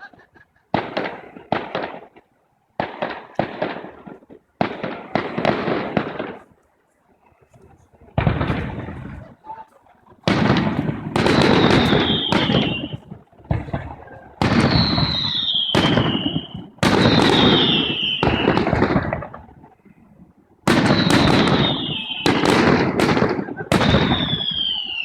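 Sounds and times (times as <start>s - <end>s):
fireworks bursting with bangs: 0.0s - 6.9s, 7.5s - 25.0s
high falling whistle: 11.4s - 13.0s, 14.7s - 18.6s, 20.9s - 22.4s, 23.5s - 25.0s.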